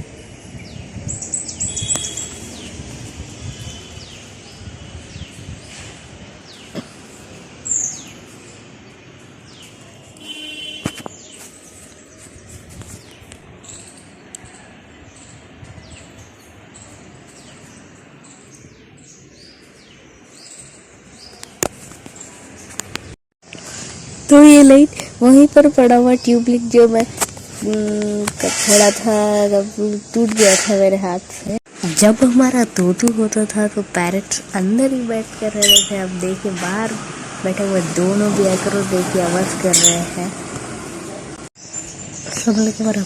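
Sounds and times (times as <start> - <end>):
harsh parrot call: 35.6 - 36.0
parrots chirping: 35.6 - 36.1, 39.7 - 40.1.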